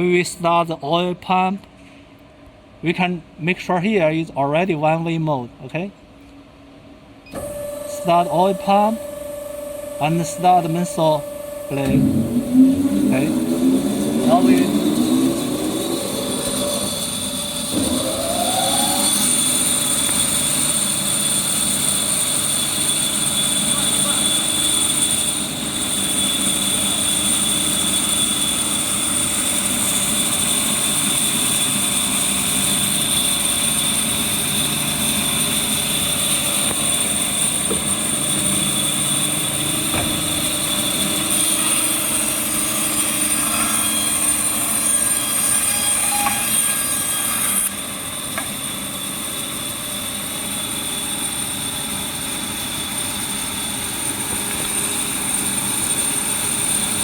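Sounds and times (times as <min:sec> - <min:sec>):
band saw whining: 0:07.3 - 0:57.0.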